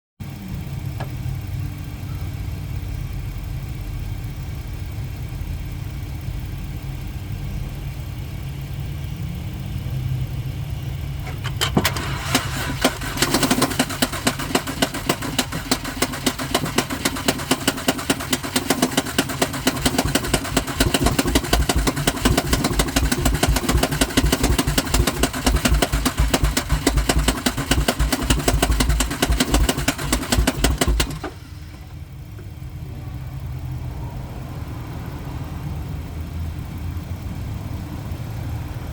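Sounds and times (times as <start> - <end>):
starter clicking: 11.2 - 31.9.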